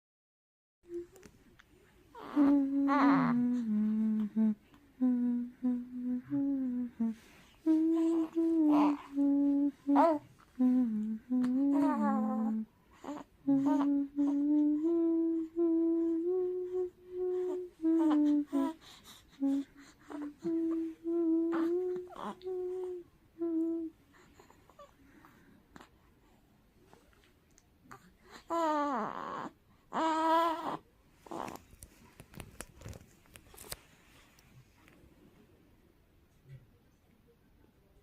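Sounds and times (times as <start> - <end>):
person humming a slow tune: 0.9 - 1.3, 2.1 - 24.6.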